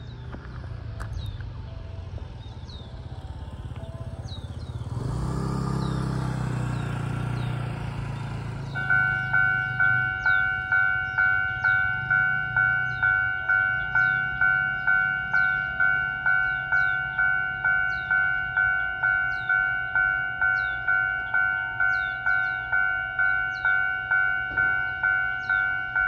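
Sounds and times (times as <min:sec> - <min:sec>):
vehicle engine passing: 0:00.0 - 0:13.1
level crossing warning bell: 0:03.1 - 0:26.0.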